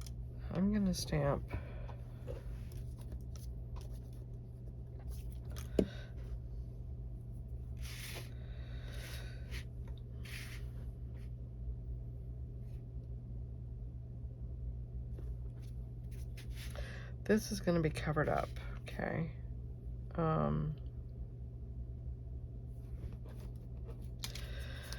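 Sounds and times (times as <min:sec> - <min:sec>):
steady low hum: 0:00.0 - 0:24.9
paper scraping and rustling: 0:07.8 - 0:08.3, 0:10.2 - 0:10.7.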